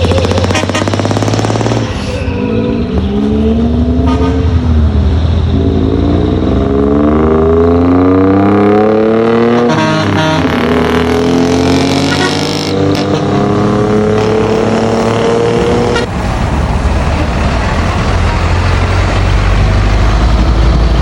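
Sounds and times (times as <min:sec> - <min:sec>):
truck diesel engine pulling away: 0:00.0 - 0:04.0, 0:12.7 - 0:21.0.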